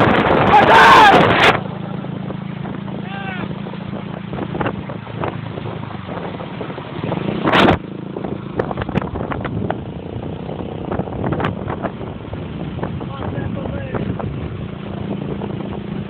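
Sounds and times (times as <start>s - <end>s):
car driving rumble: 0.0s - 16.0s
loud rush of noise: 0.0s - 16.0s.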